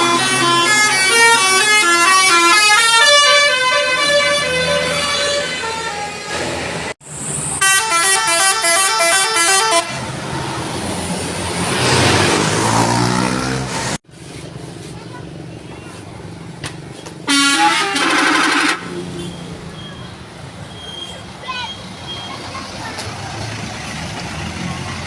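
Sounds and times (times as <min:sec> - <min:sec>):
bus horns playing tune: 0:00.0 - 0:07.0, 0:07.6 - 0:10.2, 0:17.2 - 0:19.3.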